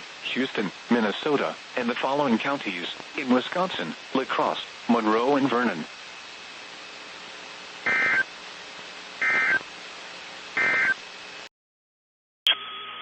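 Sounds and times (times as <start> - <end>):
faint static: 0.0 - 11.5
buzzy digital chirps: 7.9 - 8.3, 9.2 - 9.6, 10.6 - 11.0.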